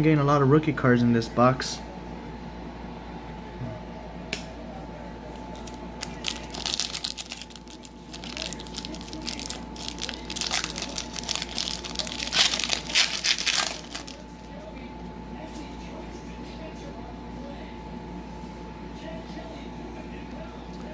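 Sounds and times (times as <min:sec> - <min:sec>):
foil wrapper crinkling: 0:05.4 - 0:14.6.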